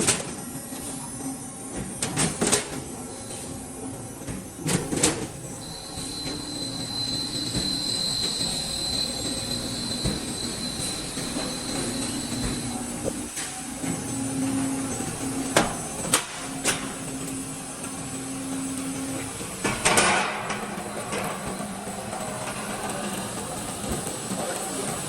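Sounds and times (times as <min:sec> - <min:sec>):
machine motor hum: 0:05.4 - 0:19.9.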